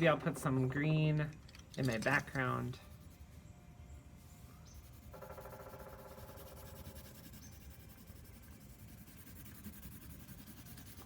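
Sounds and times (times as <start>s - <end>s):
pencil scratching on paper: 4.8s - 11.0s.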